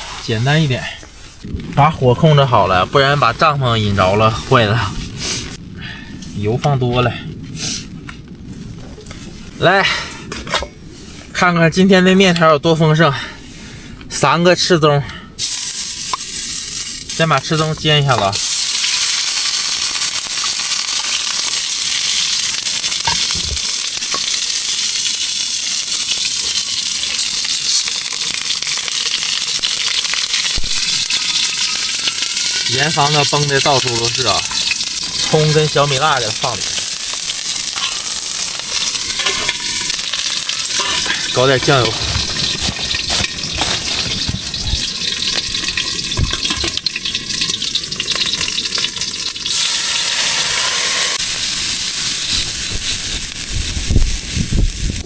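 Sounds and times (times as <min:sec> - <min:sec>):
chicken frying in oil: 0:15.6 - 0:55.0
liquid poured into pan: 0:22.4 - 0:50.6.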